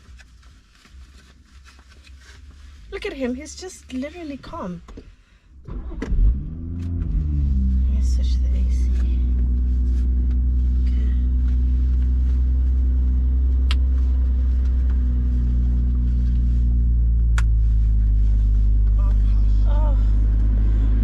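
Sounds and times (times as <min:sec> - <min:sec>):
car engine idling: 0:04.9 - 0:21.0
air conditioning running: 0:06.4 - 0:21.0.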